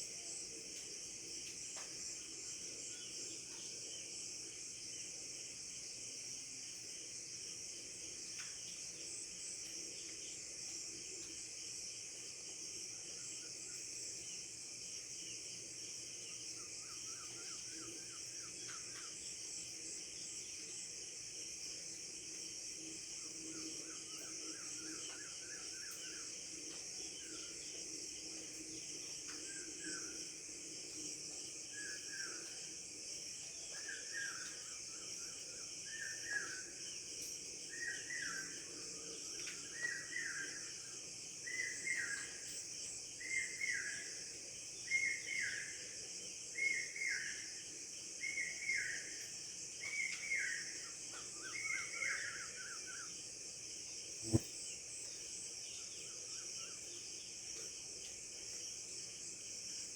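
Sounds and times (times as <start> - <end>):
crickets hissing: 52.0 - 55.8.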